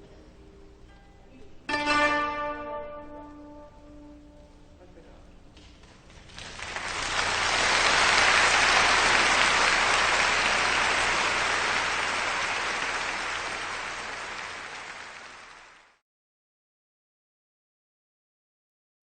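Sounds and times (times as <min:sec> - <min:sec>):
audience applauding: 0:05.8 - 0:16.0.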